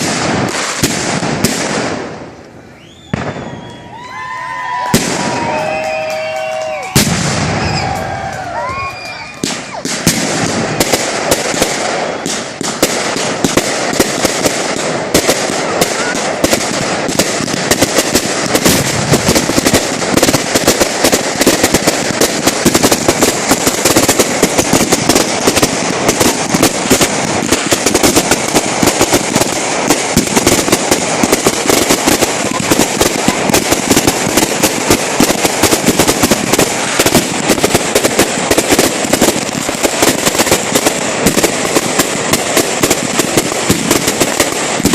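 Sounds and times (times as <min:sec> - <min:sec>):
firecrackers popping and crackling: 0:00.0 - 0:44.9
firework whistles: 0:02.6 - 0:12.9.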